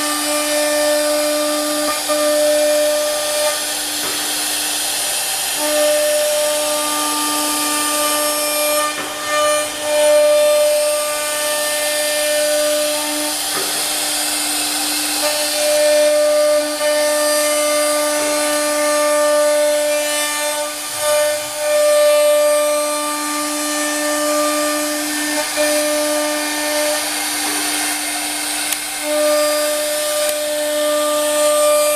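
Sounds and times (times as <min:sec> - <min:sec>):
hissing wood cutting noise: 0:00.0 - 0:31.9
router spindle whine: 0:00.0 - 0:31.9.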